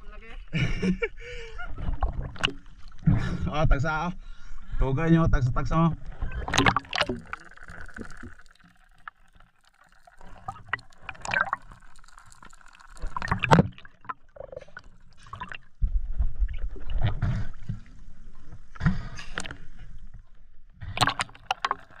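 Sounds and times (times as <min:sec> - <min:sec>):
water splashing and gurgling: 0:01.7 - 0:03.4, 0:06.0 - 0:19.7, 0:20.8 - 0:22.0.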